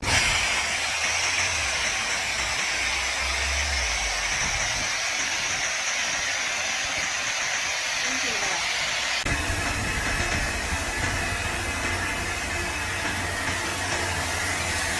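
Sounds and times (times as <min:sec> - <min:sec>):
pressure washer spraying foam: 0:00.0 - 0:14.9.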